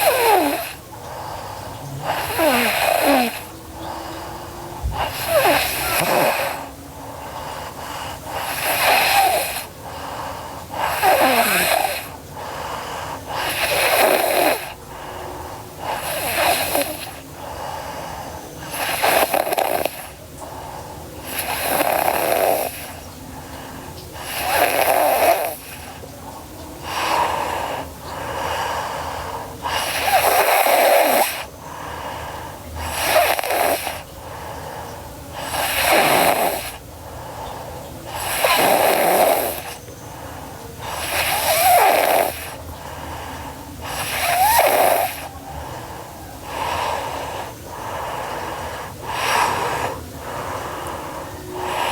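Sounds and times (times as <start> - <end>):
girl snoring: 0.0 - 0.8, 2.0 - 17.9, 18.6 - 20.2, 21.2 - 23.0, 24.2 - 26.0, 26.8 - 31.5, 32.8 - 34.1, 35.3 - 36.8, 38.1 - 39.9, 40.8 - 42.6, 43.8 - 51.9.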